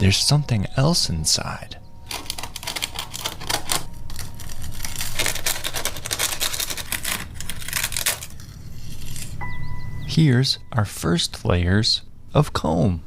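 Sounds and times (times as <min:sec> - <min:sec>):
wasp nest paper crackling and tearing: 0:02.0 - 0:09.4.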